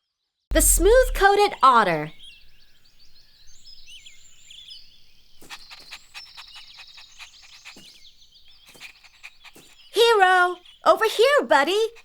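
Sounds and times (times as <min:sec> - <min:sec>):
small birds chirping: 0:00.5 - 0:12.0.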